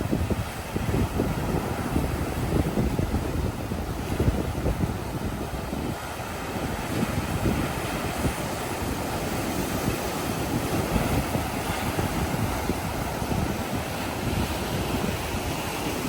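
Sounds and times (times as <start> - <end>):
ocean waves washing ashore: 0.0 - 16.0
wind buffeting microphone: 0.0 - 16.0.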